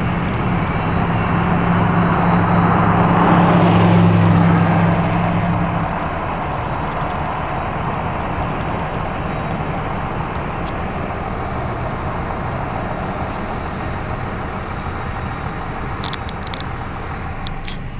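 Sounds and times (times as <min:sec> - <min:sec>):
train rumbling: 0:00.0 - 0:17.9
sharp clicks: 0:15.9 - 0:17.9.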